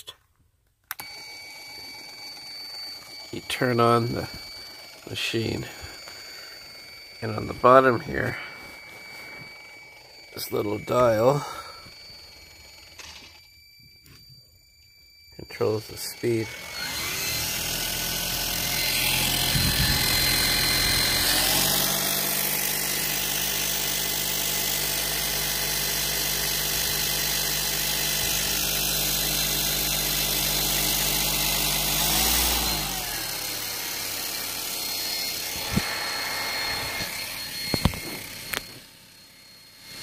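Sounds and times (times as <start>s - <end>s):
bench grinder motor humming: 0.9s - 13.0s, 16.0s - 40.0s
clicks: 36.8s - 38.8s.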